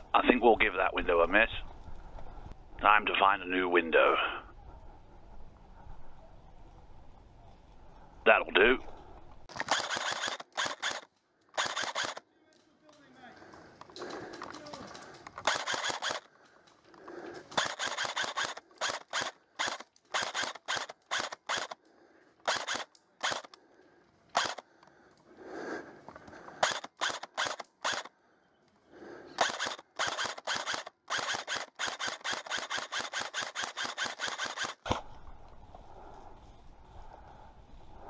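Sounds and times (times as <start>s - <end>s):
airsoft rifle firing: 9.5s - 12.2s, 15.4s - 16.3s, 17.5s - 21.8s, 22.4s - 23.6s, 24.3s - 24.7s, 26.6s - 28.1s, 29.4s - 35.0s.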